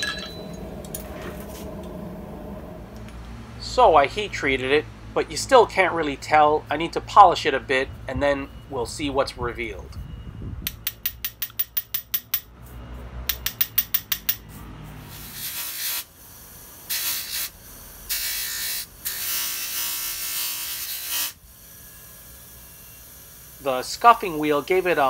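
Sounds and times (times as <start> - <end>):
hissing rubbing noise: 0.6 - 3.4
rapid ratchet-like clicks: 10.7 - 12.5, 13.3 - 14.5.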